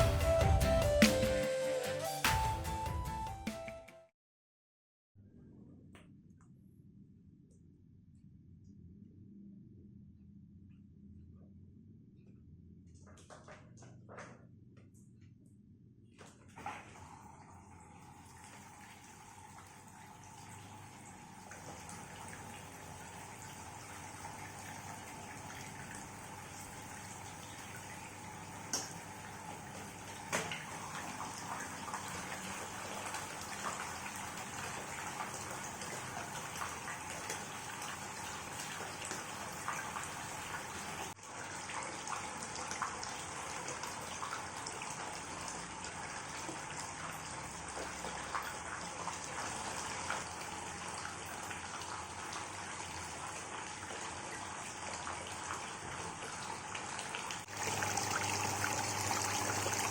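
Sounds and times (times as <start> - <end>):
water running and splashing: 18.0 - 59.9.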